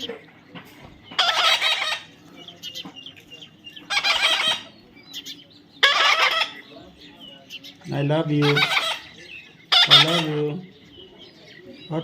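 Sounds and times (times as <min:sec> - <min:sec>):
parrot squawking: 0:01.1 - 0:02.2, 0:03.8 - 0:06.7, 0:08.2 - 0:10.6.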